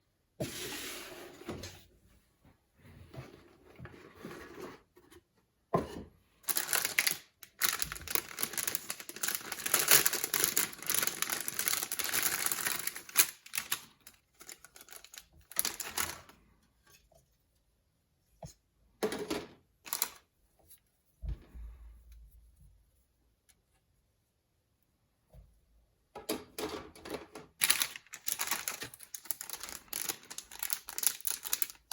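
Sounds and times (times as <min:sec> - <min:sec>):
cardboard and plastic rustling: 0:06.4 - 0:16.5, 0:19.4 - 0:20.3, 0:27.1 - 0:31.9.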